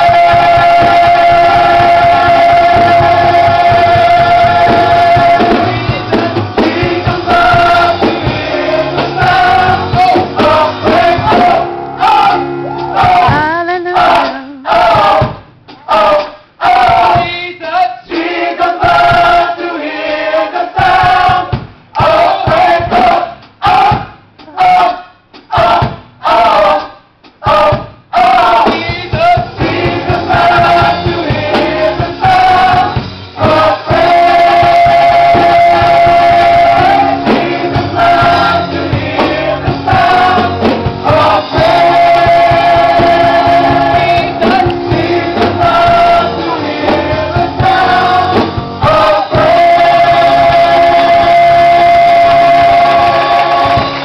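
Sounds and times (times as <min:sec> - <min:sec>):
gospel choir singing: 0:00.0 - 0:54.0
instrumental accompaniment: 0:00.0 - 0:54.0.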